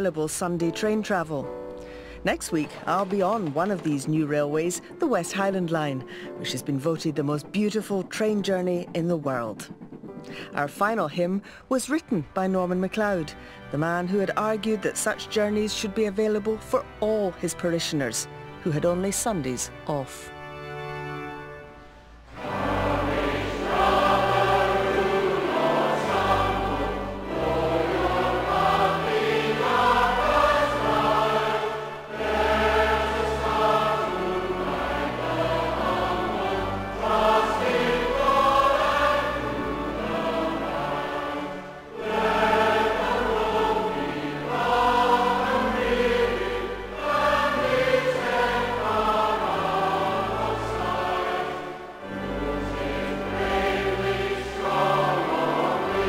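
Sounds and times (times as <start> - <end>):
low organ notes: 0.0 - 56.0
congregation singing a hymn: 22.3 - 56.0.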